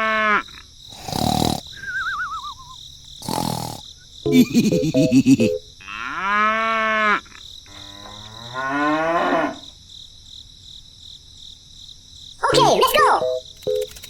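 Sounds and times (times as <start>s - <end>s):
cow mooing: 5.9s - 9.6s.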